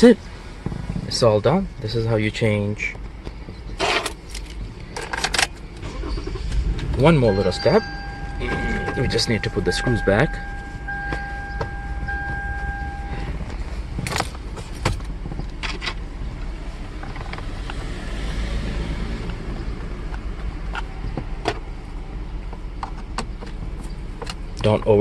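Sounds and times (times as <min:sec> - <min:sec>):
electronic warning tone: 0:07.2 - 0:13.4.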